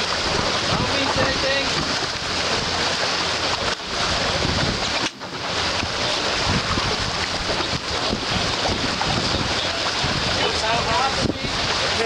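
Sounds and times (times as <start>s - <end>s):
water rushing past hull: 0.0s - 12.0s
wind buffeting microphone: 0.0s - 12.0s.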